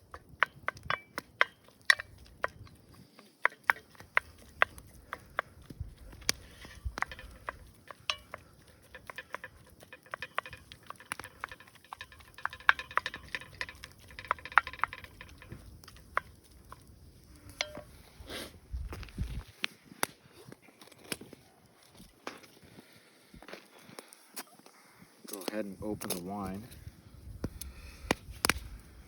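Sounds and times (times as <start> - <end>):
utensil scraping in a pan: 0.4 - 18.6
clicks and taps: 3.4 - 16.9.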